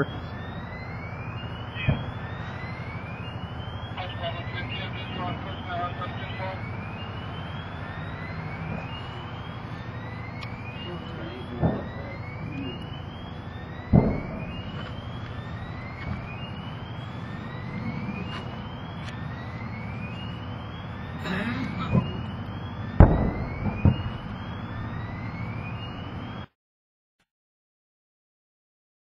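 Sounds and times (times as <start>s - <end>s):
heavy explosion booms: 10.6s - 12.2s, 13.8s - 14.8s, 22.9s - 25.0s.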